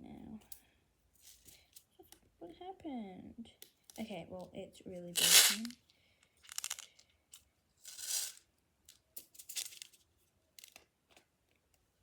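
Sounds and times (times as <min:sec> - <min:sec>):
toy clicking and rattling: 0:05.2 - 0:05.7, 0:06.4 - 0:07.0.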